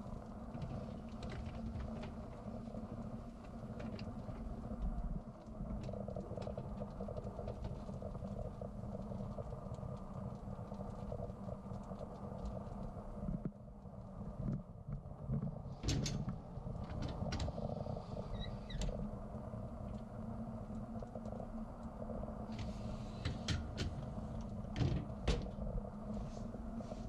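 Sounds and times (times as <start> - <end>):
dishwasher humming: 15.8 - 17.8, 22.5 - 25.7.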